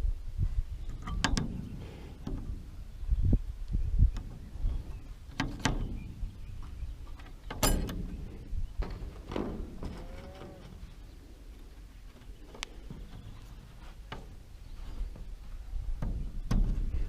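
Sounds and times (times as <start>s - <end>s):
metal parts and tools clanking: 7.1s - 10.8s
ringing metal clang: 7.6s - 8.2s.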